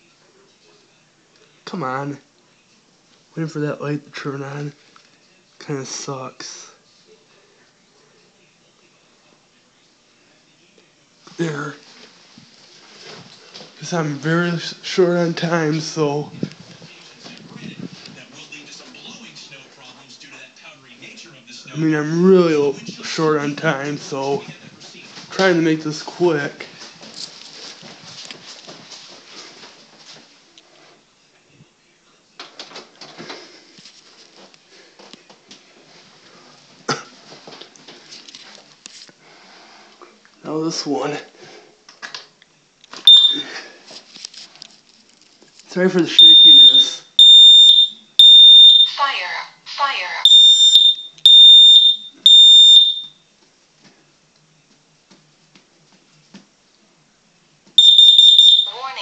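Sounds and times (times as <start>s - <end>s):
smoke alarm high-pitched beeps: 43.1s - 43.6s, 46.1s - 49.1s, 50.2s - 53.2s, 57.8s - 58.9s.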